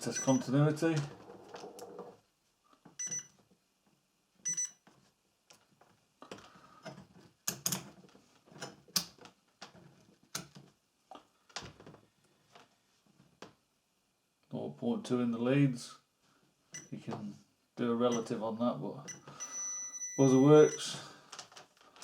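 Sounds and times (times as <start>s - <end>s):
multimeter continuity beeps: 0.0s - 0.5s, 3.0s - 3.3s, 4.5s - 4.8s, 19.1s - 20.9s.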